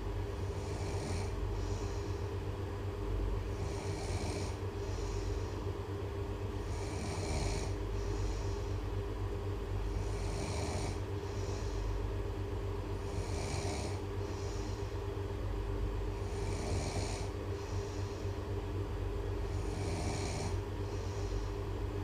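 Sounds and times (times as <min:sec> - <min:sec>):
steady low hum: 0:00.0 - 0:22.0
person snoring: 0:00.5 - 0:02.0, 0:03.5 - 0:05.5, 0:06.6 - 0:08.6, 0:09.9 - 0:11.8, 0:13.0 - 0:14.8, 0:16.2 - 0:18.0, 0:19.4 - 0:21.4.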